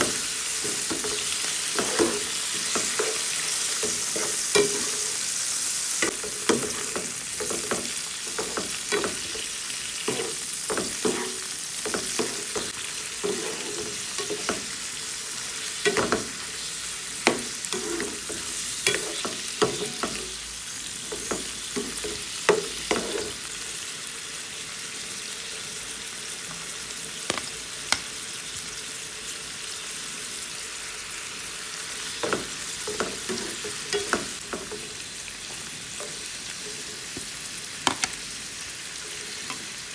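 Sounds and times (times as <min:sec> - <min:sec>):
utensil knocking and scraping pan: 0:00.0 - 0:05.2, 0:06.0 - 0:09.5, 0:10.1 - 0:14.7, 0:17.2 - 0:20.3, 0:21.1 - 0:23.4, 0:32.2 - 0:34.8
food sizzling in a pan: 0:00.0 - 0:39.9.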